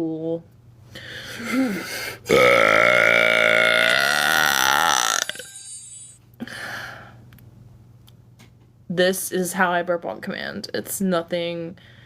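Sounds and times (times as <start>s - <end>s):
woman belching: 2.3s - 5.6s.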